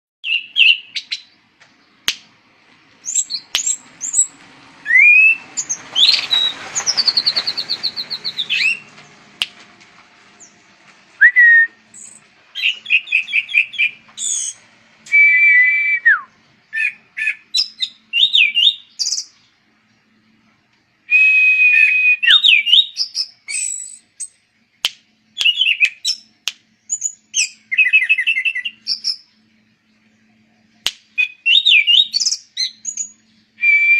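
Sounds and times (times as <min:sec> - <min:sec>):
thrush singing: 0:03.0 - 0:09.6.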